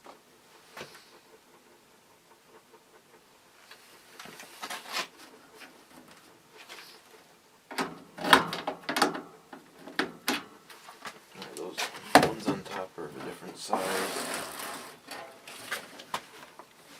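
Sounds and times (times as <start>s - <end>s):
parts clattering and knocking: 7.6s - 16.7s
metal and plastic parts rattling: 13.8s - 16.1s.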